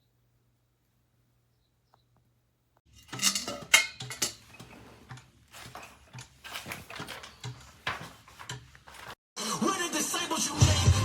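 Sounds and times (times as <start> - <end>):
hard objects clicking and clattering: 2.9 - 9.2.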